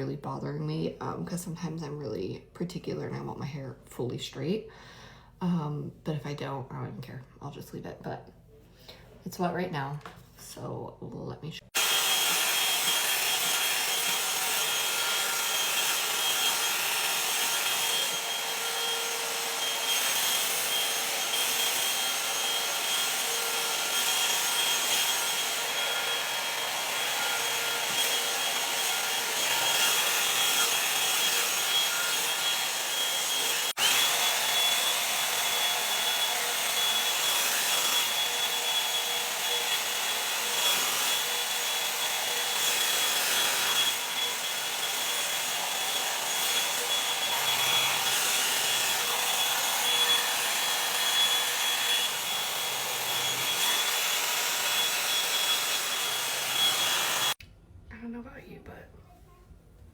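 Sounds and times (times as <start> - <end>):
blow dryer brush running: 11.7 - 57.4.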